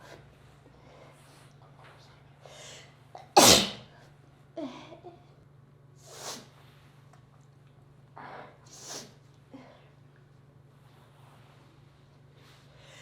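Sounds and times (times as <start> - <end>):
sniffs and breaths: 0.0 - 3.0, 6.0 - 7.3, 10.7 - 13.0
woman sneezing: 3.4 - 3.9.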